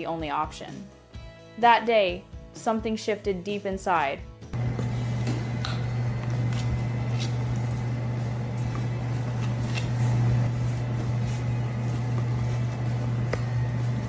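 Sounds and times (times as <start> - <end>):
steady low hum: 4.6 - 14.0.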